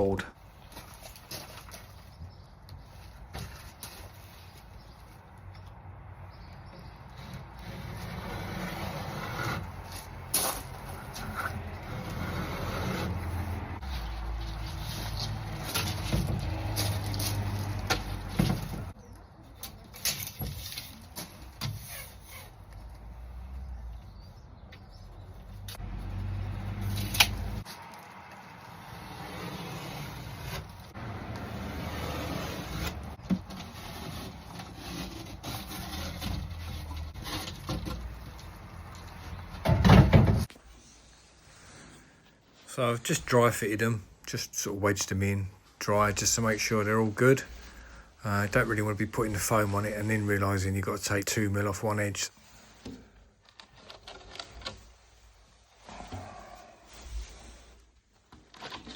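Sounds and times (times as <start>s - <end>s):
plasterboard being cut and handled: 29.0s - 38.2s
loud thump and rustle: 39.6s - 40.5s.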